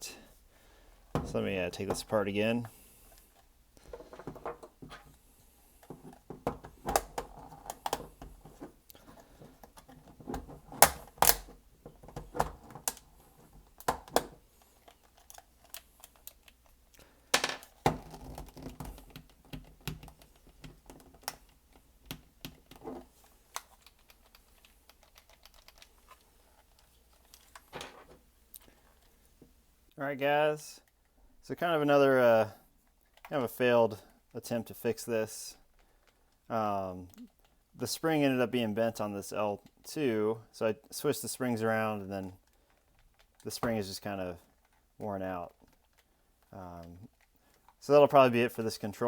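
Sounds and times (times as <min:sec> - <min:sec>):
plastic clicks and snaps: 0:08.9 - 0:13.0, 0:13.8 - 0:22.8.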